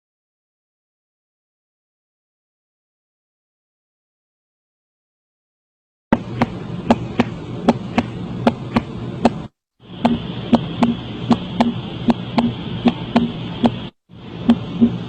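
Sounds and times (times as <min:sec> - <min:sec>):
heartbeat lub-dub beats: 0:06.2 - 0:15.0
steady hiss: 0:06.2 - 0:15.0.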